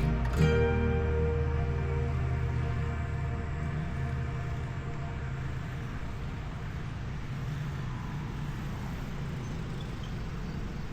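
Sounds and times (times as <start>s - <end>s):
music track: 0.0s - 6.3s
low rumbling traffic noise: 0.0s - 10.9s.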